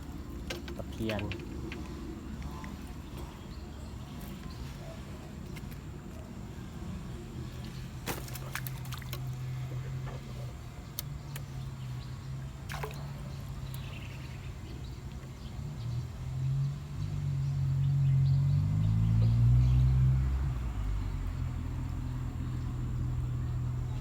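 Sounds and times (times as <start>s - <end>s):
light water sounds: 0.0s - 16.3s
low engine hum: 0.0s - 24.0s.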